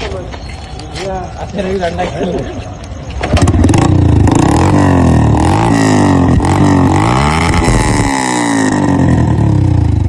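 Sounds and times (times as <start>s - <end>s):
motorcycle engine revving: 3.2s - 10.0s.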